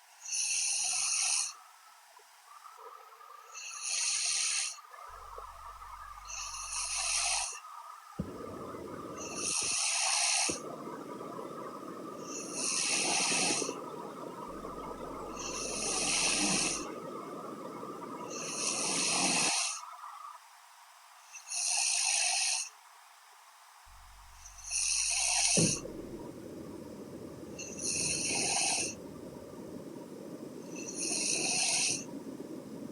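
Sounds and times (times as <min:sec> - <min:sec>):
steady background hum: 0:05.0 - 0:20.4, 0:23.8 - 0:32.9.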